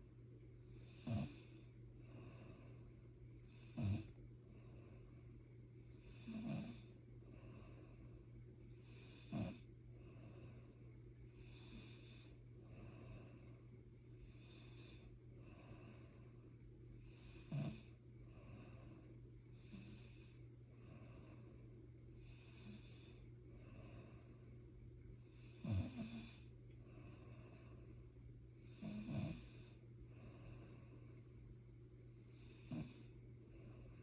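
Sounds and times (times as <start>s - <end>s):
soft snoring breaths: 0.0s - 34.0s
steady low hum: 0.0s - 34.0s
loud snorts: 1.0s - 1.5s, 3.7s - 4.1s, 6.2s - 6.8s, 9.2s - 9.6s, 17.4s - 17.8s, 25.6s - 26.4s, 28.8s - 29.6s.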